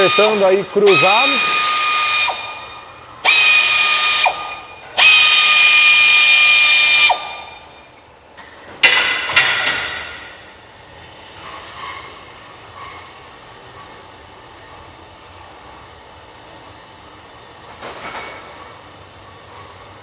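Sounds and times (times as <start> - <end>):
power drill running: 0.0 - 7.6.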